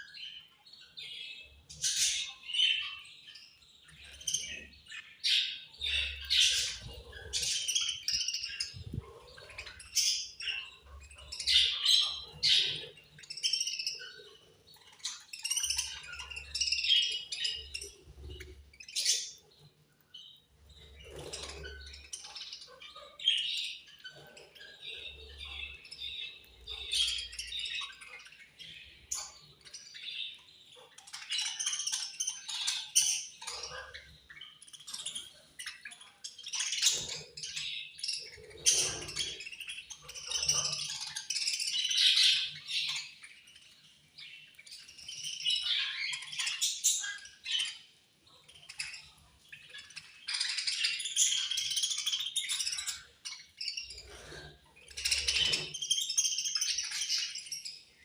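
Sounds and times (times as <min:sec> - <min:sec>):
budgerigars chirping: 0:00.0 - 0:58.0.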